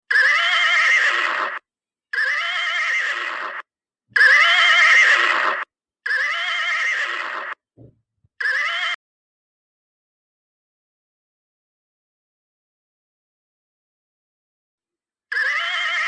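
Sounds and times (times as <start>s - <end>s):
horse whinnying: 0.1s - 7.6s, 8.4s - 9.0s, 15.3s - 16.0s.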